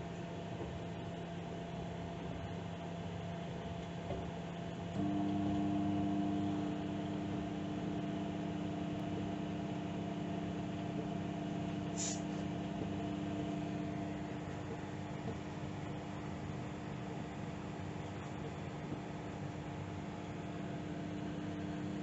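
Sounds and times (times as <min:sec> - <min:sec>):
microwave oven humming: 0:00.0 - 0:22.0
short hiss: 0:11.9 - 0:12.4.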